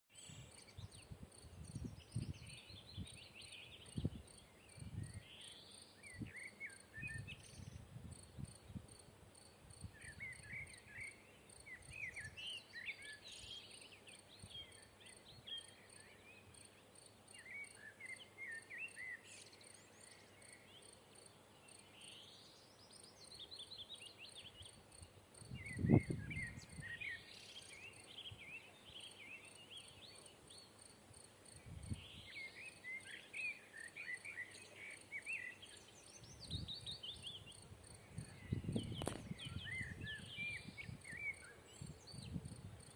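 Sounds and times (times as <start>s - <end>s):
blackbird singing: 0.1s - 7.8s, 10.0s - 16.4s, 17.4s - 20.9s, 25.5s - 30.8s, 31.8s - 42.4s
crickets chirping: 0.5s - 7.5s, 8.1s - 12.4s, 13.0s - 42.9s.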